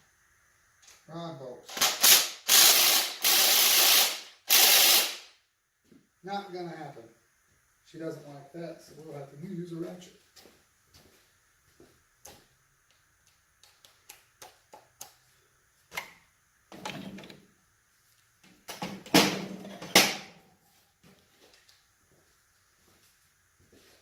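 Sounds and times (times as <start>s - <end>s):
ratchet clicking on bolts: 1.7s - 5.2s.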